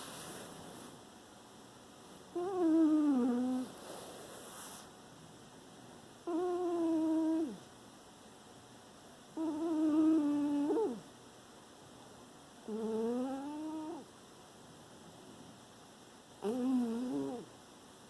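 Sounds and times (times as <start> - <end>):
cat snoring: 2.4 - 4.9, 6.3 - 7.6, 9.4 - 11.0, 12.7 - 14.1, 16.4 - 17.5.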